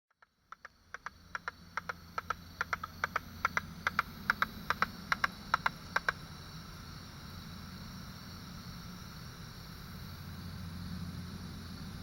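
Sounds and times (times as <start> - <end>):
katydid clicks in pairs: 0.1 - 6.2
bat detector hiss: 0.5 - 12.0.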